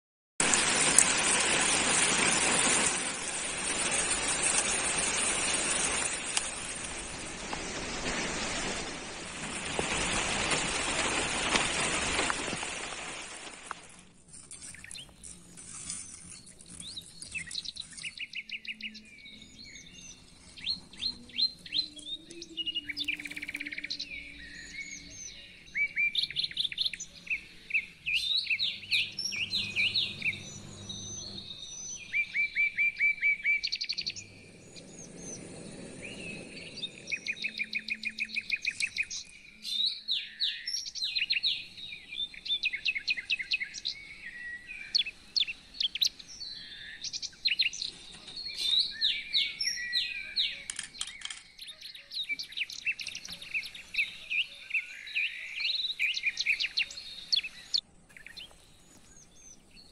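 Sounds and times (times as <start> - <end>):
steady rushing noise: 0.4 - 13.8, 27.6 - 32.2, 34.0 - 37.8
small birds chirping: 0.6 - 59.9.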